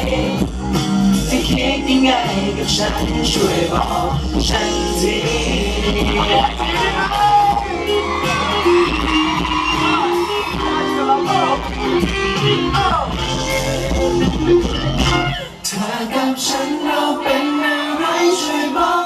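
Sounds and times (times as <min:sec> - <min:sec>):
live pop band playing: 0:00.0 - 0:19.0
person singing: 0:01.2 - 0:11.7.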